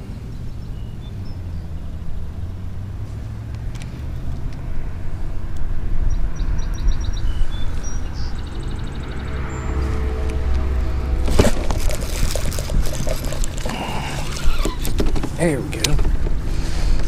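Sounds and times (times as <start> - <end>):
wind: 0.0 - 17.0
moving water: 9.0 - 17.0.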